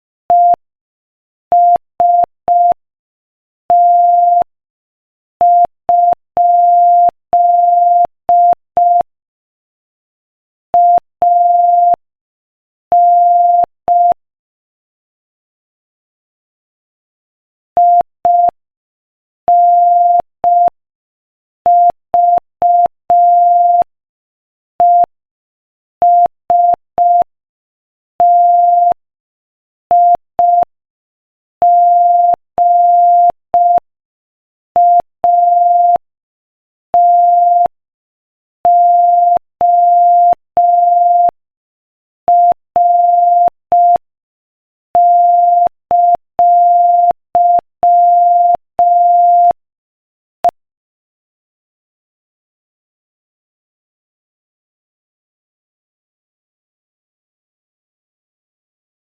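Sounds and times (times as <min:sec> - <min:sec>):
morse code beeping: 0:45.0 - 0:49.6.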